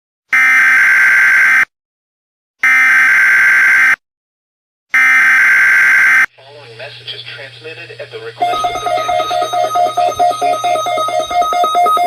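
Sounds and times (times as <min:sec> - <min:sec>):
buzzing digital data tones: 0:08.4 - 0:12.0.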